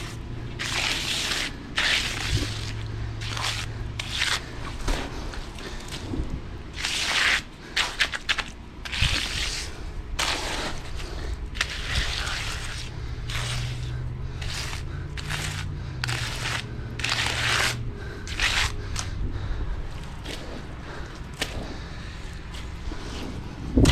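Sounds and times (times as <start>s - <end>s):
tool scraping wet concrete: 0.0s - 6.0s, 6.7s - 19.2s, 22.5s - 23.9s
engine running: 0.0s - 23.9s.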